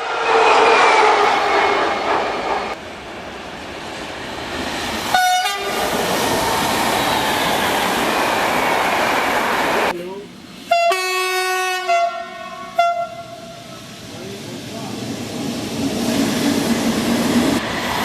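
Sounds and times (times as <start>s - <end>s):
train wheels rushing on rails: 0.0s - 18.0s
train horn blast: 5.1s - 5.9s, 10.7s - 13.7s.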